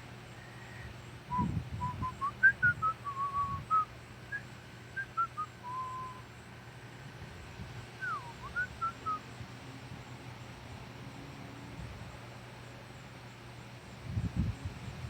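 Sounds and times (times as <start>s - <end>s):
person whistling a tune: 1.3s - 4.4s, 5.0s - 6.2s, 8.0s - 9.2s.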